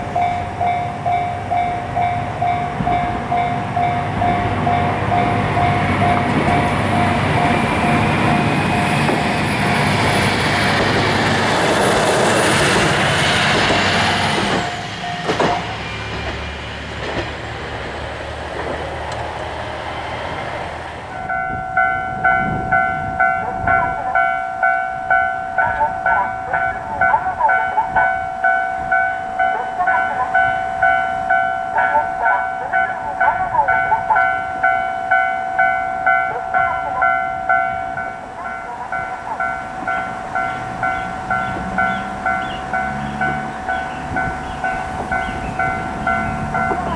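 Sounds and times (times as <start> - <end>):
crossing warning bell: 0.0 - 17.4, 21.0 - 46.9
train engine and wheels rushing: 0.0 - 46.9.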